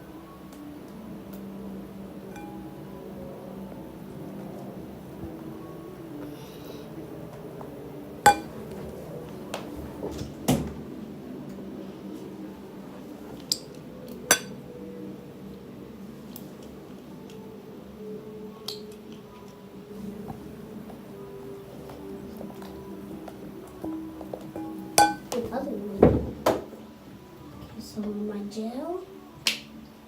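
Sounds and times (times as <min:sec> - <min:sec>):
utensils clinking on dishware: 0:08.3 - 0:08.5, 0:24.6 - 0:25.4.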